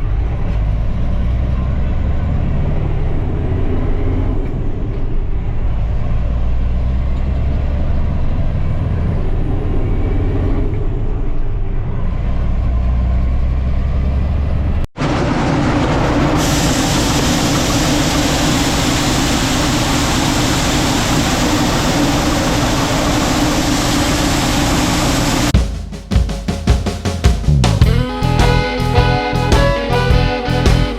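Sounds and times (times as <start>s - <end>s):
steady rushing noise: 15.0s - 30.9s
low engine rumble: 27.4s - 30.9s.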